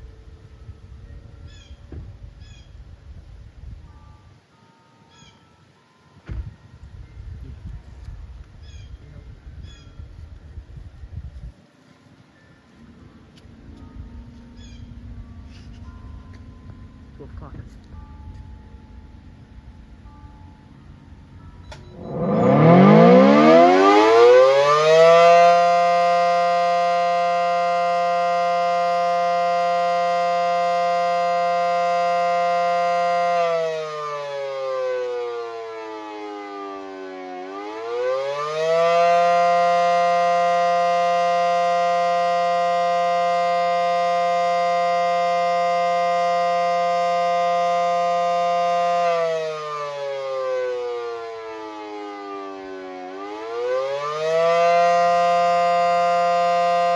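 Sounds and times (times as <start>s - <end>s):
warning siren wailing: 12.7s - 56.9s.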